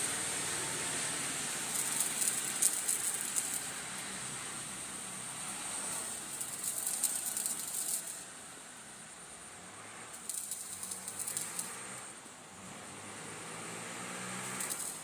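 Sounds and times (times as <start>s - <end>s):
welding arc crackling: 0.0s - 8.6s, 10.2s - 12.1s, 14.2s - 15.0s
steady high hiss: 0.0s - 15.0s.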